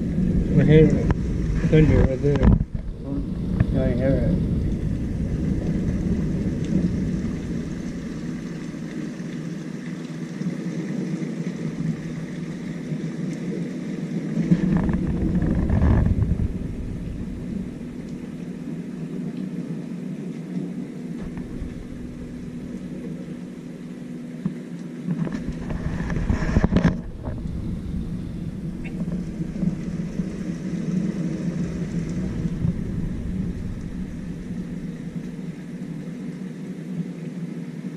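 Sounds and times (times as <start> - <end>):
thunder rumbling: 0.0 - 9.4, 14.4 - 19.4, 21.0 - 24.4, 25.2 - 36.3
faint steady hum: 0.0 - 37.9.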